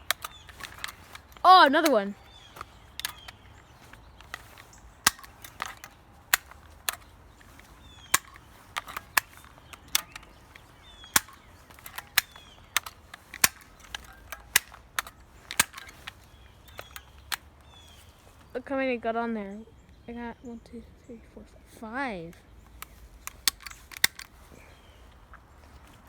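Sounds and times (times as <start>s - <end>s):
stapler firing staples: 0.0s - 3.4s, 4.2s - 17.4s, 23.3s - 24.3s.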